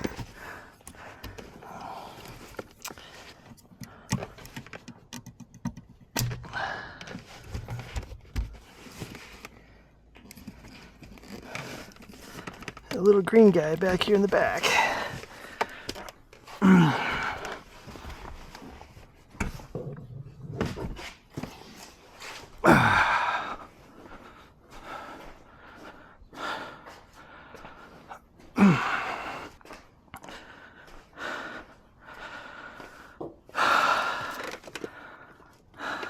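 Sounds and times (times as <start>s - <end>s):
tools clicking and knocking: 2.5s - 8.6s
man grunting with effort: 16.6s - 17.5s, 22.6s - 23.5s, 28.6s - 29.2s.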